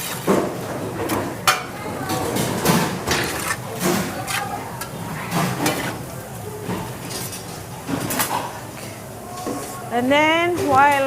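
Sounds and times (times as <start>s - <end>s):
utensil scraping a pan: 2.4s - 6.1s.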